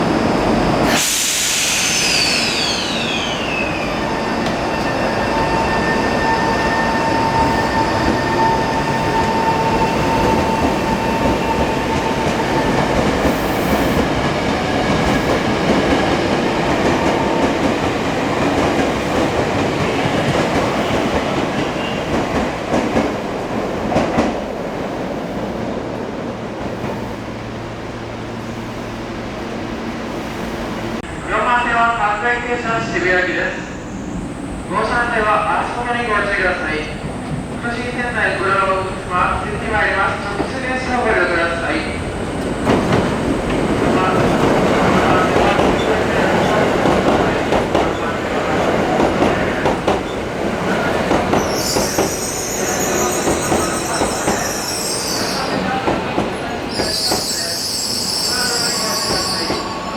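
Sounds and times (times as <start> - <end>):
electric train whine: 0.0 - 22.4, 26.4 - 59.9
train rumble: 34.2 - 59.9.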